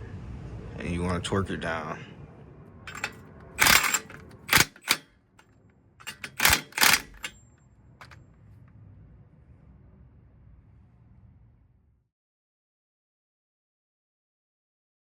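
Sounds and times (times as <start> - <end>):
wrench clicking on metal: 2.9 - 5.0, 6.0 - 7.4.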